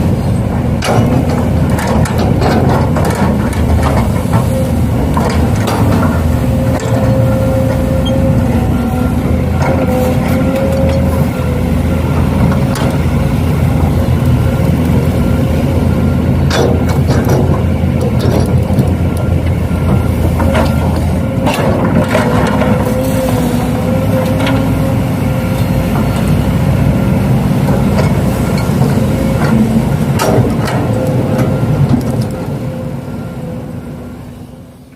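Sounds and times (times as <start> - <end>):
sharp clicks and knocks: 0.7 - 7.8, 12.2 - 13.2, 16.4 - 22.8, 27.6 - 32.5.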